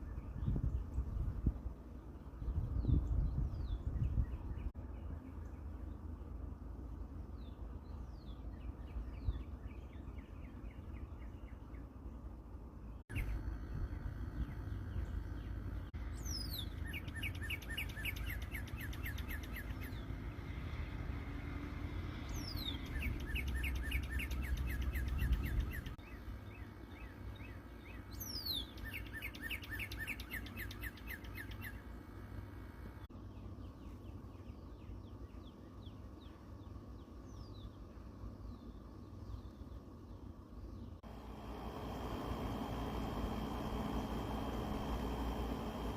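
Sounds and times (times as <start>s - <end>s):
low rumble: 12.0s - 17.3s
songbird whistle and trill: 14.4s - 20.2s, 21.4s - 31.9s.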